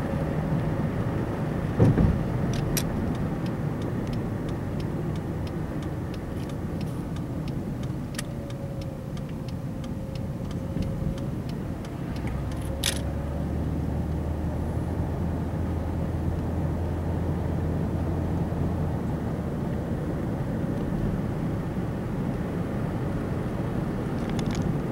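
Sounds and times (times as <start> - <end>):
light engine ticking: 2.5 - 13.1
sharp click: 10.5 - 13.1.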